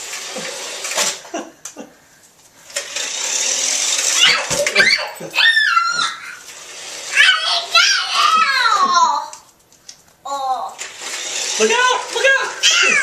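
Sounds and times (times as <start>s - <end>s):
toy car steady hiss: 0.0s - 1.2s, 2.6s - 8.6s, 10.5s - 13.0s.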